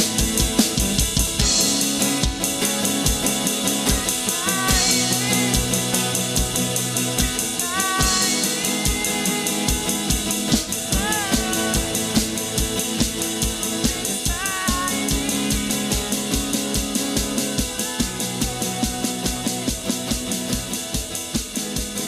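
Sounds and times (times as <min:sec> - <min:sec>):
sustained bass notes: 0:00.0 - 0:20.9
drum kit beat: 0:00.0 - 0:22.0.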